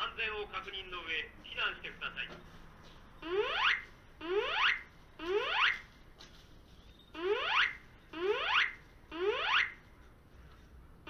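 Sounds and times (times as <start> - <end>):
fire alarm rising whoop tone: 3.2 - 5.9, 7.2 - 9.8.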